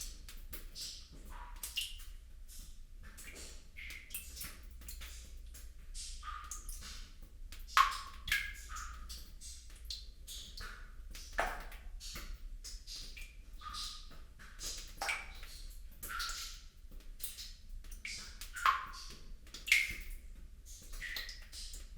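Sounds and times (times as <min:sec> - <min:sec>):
water dripping: 0:00.0 - 0:21.9.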